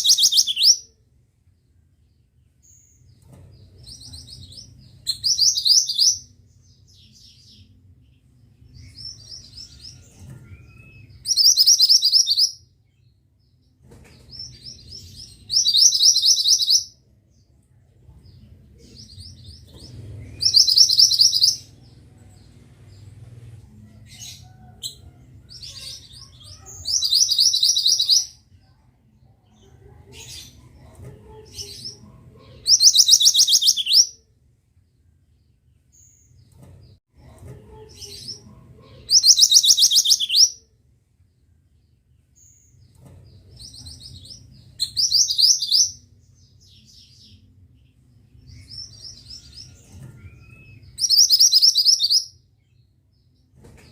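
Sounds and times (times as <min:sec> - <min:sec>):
soft bird chirps: 0:00.0 - 0:00.9, 0:08.7 - 0:28.4, 0:32.6 - 0:34.2, 0:38.0 - 0:40.6, 0:42.3 - 0:53.9
faint low hum: 0:12.7 - 0:39.8.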